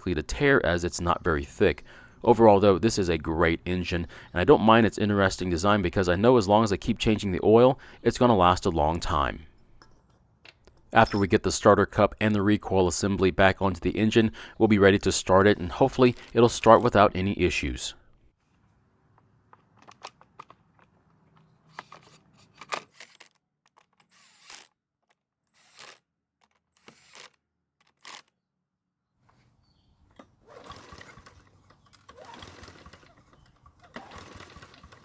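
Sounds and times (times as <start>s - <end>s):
engine turning over without starting: 30.4s - 35.0s.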